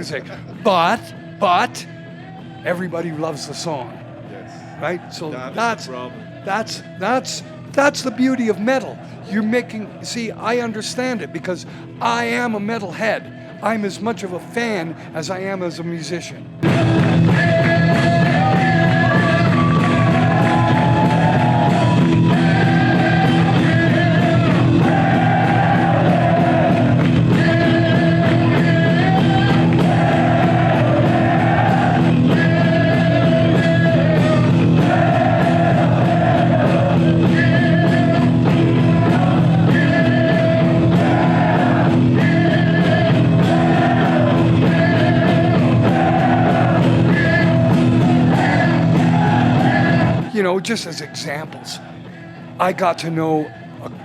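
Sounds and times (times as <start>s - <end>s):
heavy metal song: 16.6s - 50.5s.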